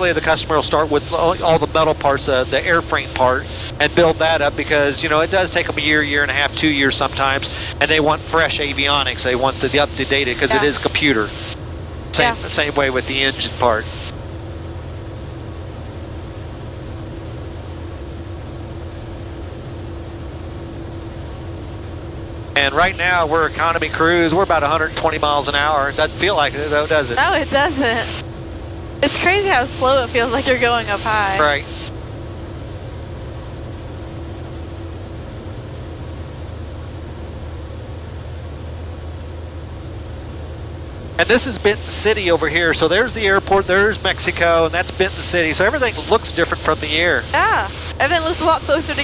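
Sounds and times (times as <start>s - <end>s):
airflow noise: 0.0s - 14.2s, 22.6s - 31.9s, 41.2s - 49.0s
aircraft engine and propeller drone: 0.0s - 49.0s.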